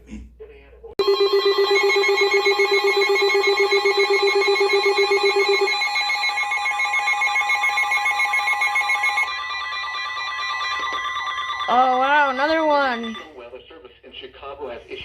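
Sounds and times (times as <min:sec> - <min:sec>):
steady electronic tone: 0:01.0 - 0:12.2
pulsing electronic alert tones: 0:01.0 - 0:13.3.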